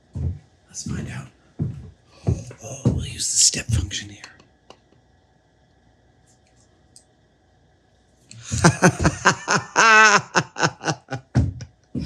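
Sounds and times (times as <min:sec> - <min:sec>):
man laughing: 0:08.4 - 0:11.6.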